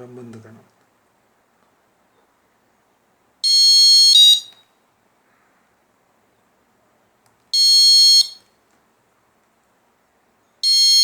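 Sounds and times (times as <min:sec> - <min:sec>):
alarm buzzer beeping: 0:03.4 - 0:04.6, 0:07.6 - 0:08.4, 0:10.6 - 0:11.0.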